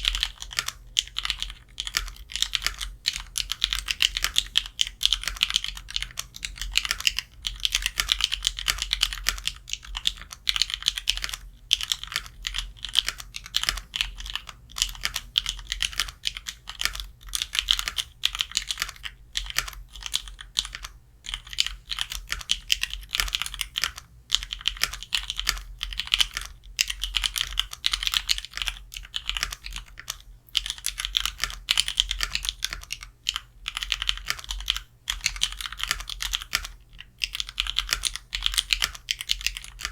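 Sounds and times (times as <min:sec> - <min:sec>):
mechanical keyboard keystroke clacks: 0:00.0 - 0:39.9.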